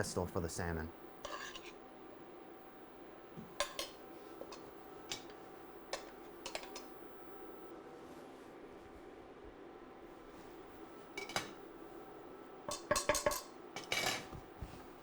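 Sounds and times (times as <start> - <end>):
utensil clinking against plate: 3.6 - 5.4, 6.0 - 6.9, 12.7 - 14.4.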